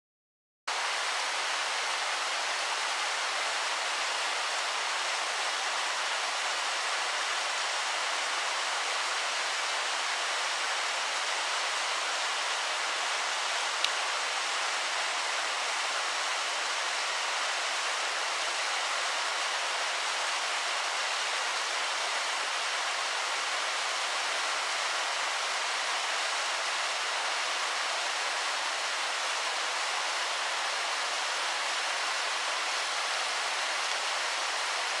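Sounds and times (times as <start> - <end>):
waterfall rushing: 0.7 - 35.0
faint click: 13.8 - 14.0.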